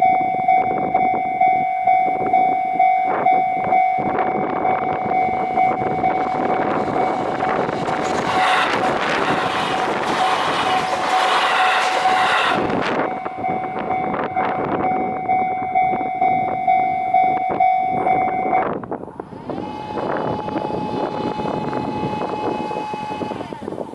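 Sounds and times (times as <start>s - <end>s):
clicking train wheels: 0.0s - 16.7s, 17.3s - 23.9s
higher steady alarm tone: 0.0s - 18.8s
electric train passing: 0.0s - 23.9s
pulsing crossing alarm: 0.0s - 23.9s.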